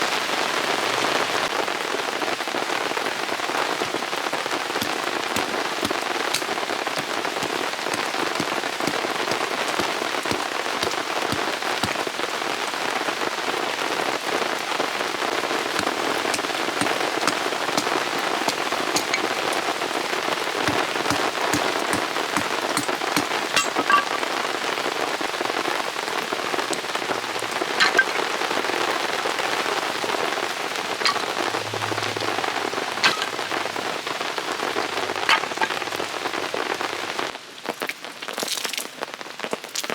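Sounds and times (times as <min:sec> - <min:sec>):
steady rain falling: 0:00.0 - 0:39.9
sharp raindrop hits: 0:01.5 - 0:39.0.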